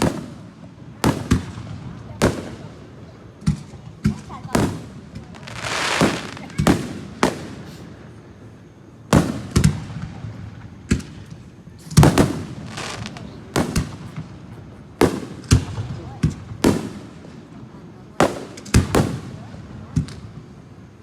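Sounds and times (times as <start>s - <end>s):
firework bangs: 0.0s - 20.5s
firework hissing burst: 4.5s - 8.3s.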